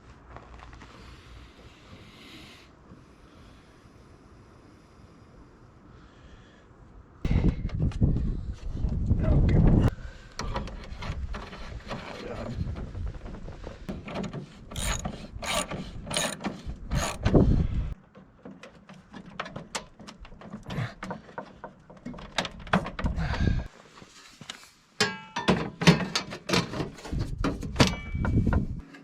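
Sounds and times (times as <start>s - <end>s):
hand tools clicking and knocking: 13.9s - 17.4s.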